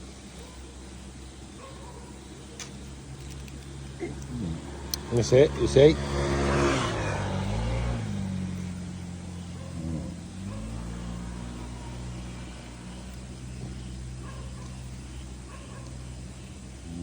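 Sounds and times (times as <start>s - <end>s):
engine humming: 0.0s - 17.0s.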